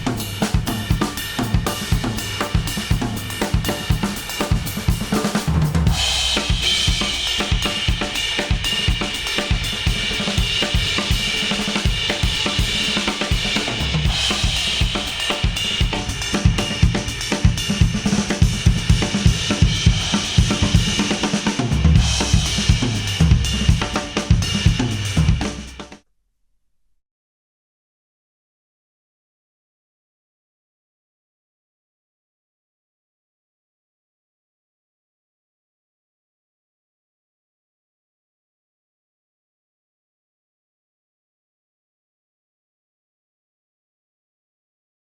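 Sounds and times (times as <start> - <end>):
heavy bass: 0.0 - 25.8
instrumental music with drums: 0.0 - 26.0.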